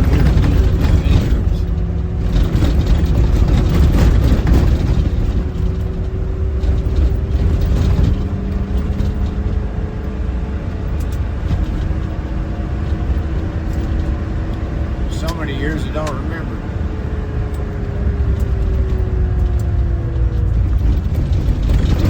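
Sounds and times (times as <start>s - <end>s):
knocks and rattles: 0.0s - 9.7s, 17.2s - 22.0s
engine and road rumble: 0.0s - 22.0s.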